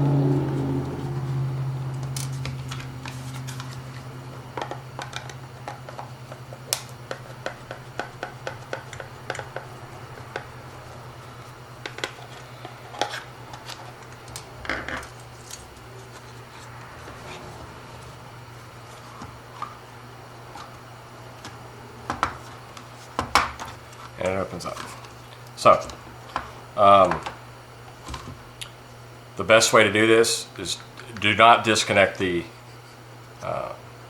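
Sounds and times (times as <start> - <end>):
low hum: 0.0 - 22.0.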